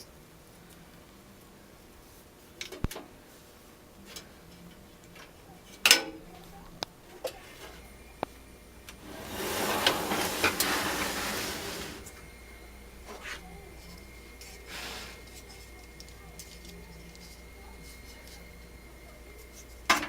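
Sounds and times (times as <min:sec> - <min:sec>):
cables rustling: 0:05.0 - 0:19.9.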